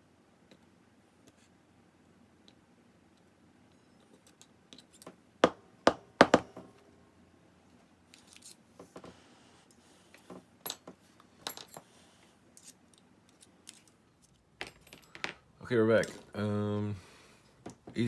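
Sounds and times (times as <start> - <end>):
metal parts clinking on surface: 8.1 - 8.6, 10.6 - 12.0, 12.6 - 16.4.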